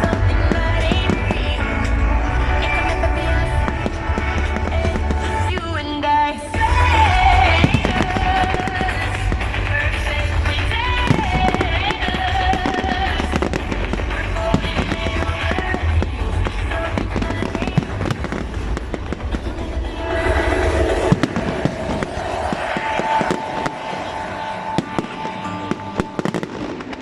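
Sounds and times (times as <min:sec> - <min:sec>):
fireworks bangs and crackles: 0:00.0 - 0:27.0
music playing: 0:00.0 - 0:27.0
low rumble: 0:06.6 - 0:26.9.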